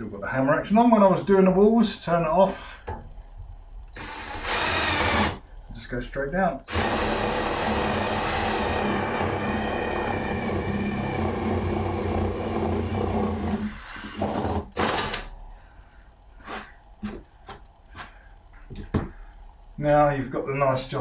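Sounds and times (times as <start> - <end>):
power drill boring through wood: 4.0 - 5.4, 6.7 - 15.3.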